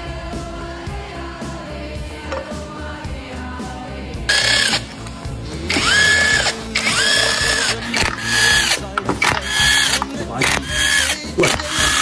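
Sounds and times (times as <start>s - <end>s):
power tool motor whine: 4.3s - 12.0s.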